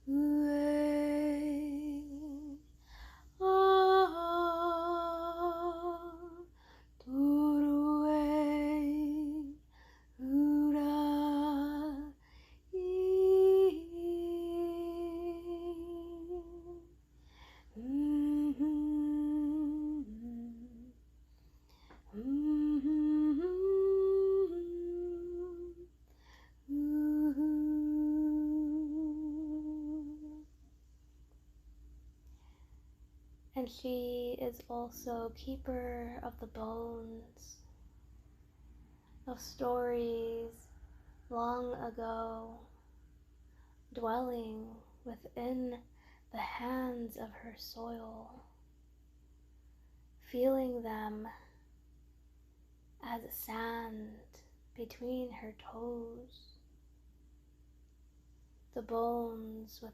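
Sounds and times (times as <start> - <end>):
woman humming a slow melody: 0.0 - 2.6, 3.4 - 9.6, 10.2 - 16.9, 17.7 - 21.0, 22.0 - 26.0, 26.6 - 30.5
short breaths: 2.8 - 3.4.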